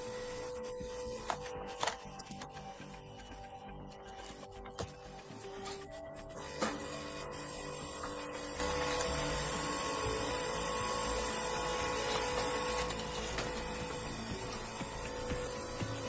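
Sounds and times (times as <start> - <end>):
wood-processing machine whining: 0.0 - 16.0.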